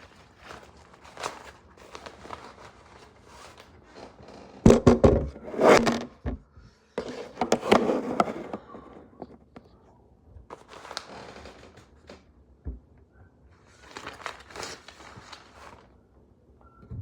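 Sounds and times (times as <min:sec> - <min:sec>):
loud thumps: 0:04.7 - 0:06.4
packaging rustling and clicking: 0:13.8 - 0:15.9.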